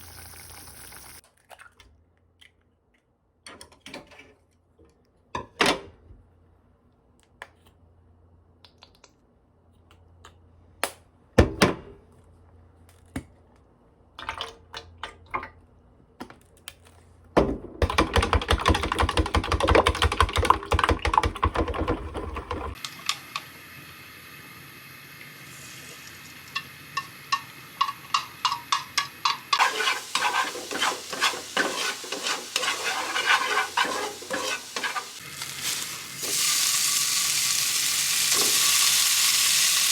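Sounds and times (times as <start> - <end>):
food sizzling in a frying pan: 0.0 - 1.2, 22.8 - 39.9
dishes and utensils clinking: 26.5 - 35.2
utensil tapping a pan: 26.6 - 35.0.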